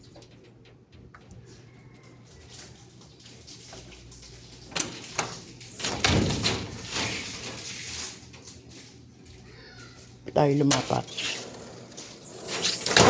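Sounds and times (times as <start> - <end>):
door rattle: 4.7 - 7.7.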